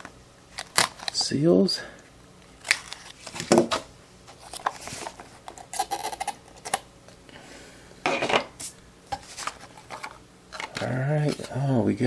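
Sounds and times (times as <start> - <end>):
packaging clicks and rustles: 0.5 - 1.3.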